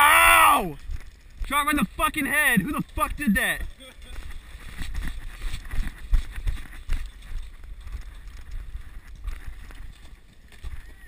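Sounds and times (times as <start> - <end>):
low thumps and rustling: 3.6 - 11.0.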